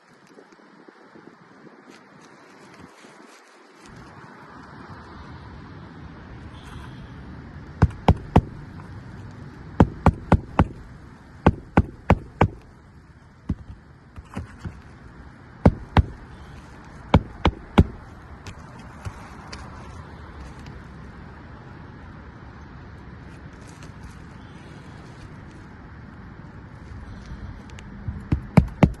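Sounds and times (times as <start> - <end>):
steady wind hiss: 0.0 - 29.0
hammer striking roofing nails: 7.8 - 8.6, 9.8 - 10.8, 11.5 - 12.6, 13.5 - 14.8, 15.7 - 16.2, 17.1 - 18.1, 28.1 - 29.0.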